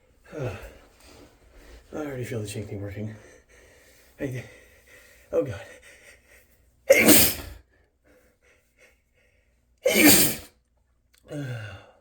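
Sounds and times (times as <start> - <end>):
man sneezing: 6.9 - 7.6, 9.8 - 10.5.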